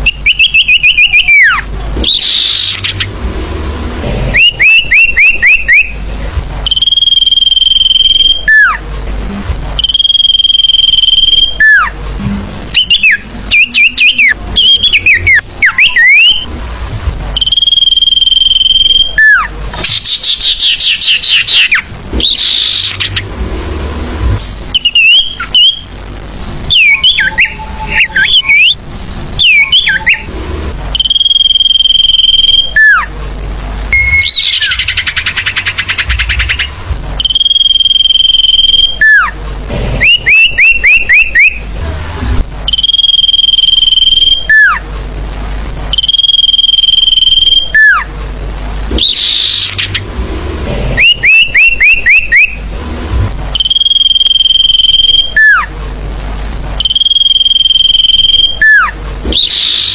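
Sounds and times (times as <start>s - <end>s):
buzzy trill: 0.0s - 44.9s, 45.9s - 48.1s, 48.8s - 55.8s, 56.6s - 59.9s
high whistle with falling slur: 53.6s - 55.7s.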